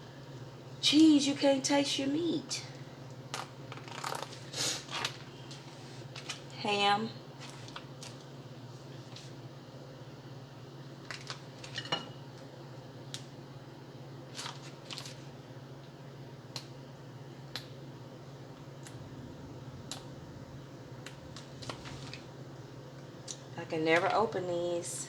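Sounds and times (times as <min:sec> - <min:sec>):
food packaging rustling: 0:03.4 - 0:06.5, 0:07.4 - 0:09.4, 0:11.0 - 0:11.9, 0:14.3 - 0:15.4, 0:19.8 - 0:22.4
low hum: 0:17.9 - 0:23.2.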